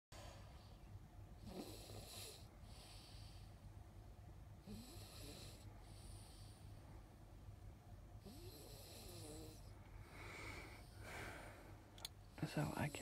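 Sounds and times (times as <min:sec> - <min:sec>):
boy snoring: 0:01.4 - 0:03.1, 0:04.7 - 0:05.7, 0:08.2 - 0:09.7.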